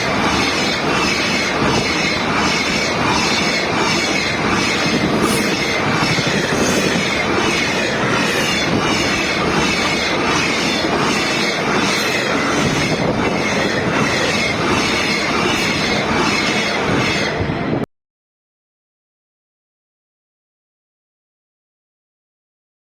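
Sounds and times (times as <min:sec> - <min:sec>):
wheel clacks on rail: 0:00.0 - 0:17.4
faint high wheel squeal: 0:00.0 - 0:17.5
freight train wheels rumbling: 0:00.0 - 0:17.9.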